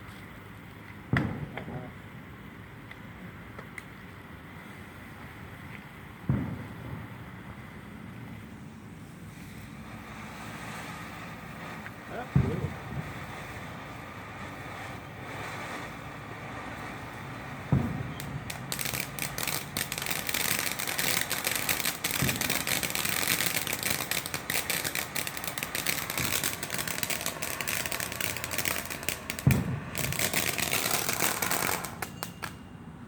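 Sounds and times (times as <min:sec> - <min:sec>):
firework crackling: 0:00.0 - 0:32.8
firework thump: 0:01.1 - 0:01.9, 0:06.2 - 0:07.2, 0:11.8 - 0:13.5, 0:17.6 - 0:19.8, 0:21.6 - 0:32.6
low pops: 0:09.8 - 0:32.6.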